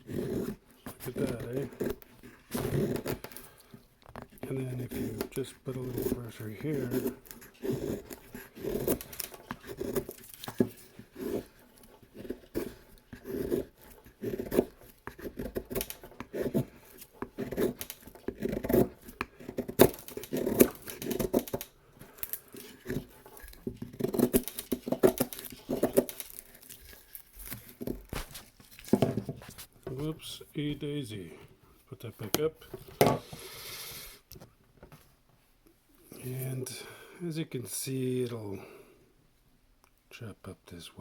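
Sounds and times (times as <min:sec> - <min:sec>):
knife scraping into wood: 0:04.3 - 0:29.7.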